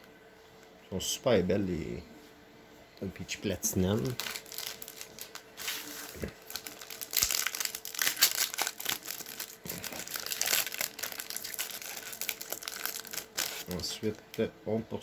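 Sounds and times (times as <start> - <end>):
foil wrapper crinkling and tearing: 3.7 - 14.4.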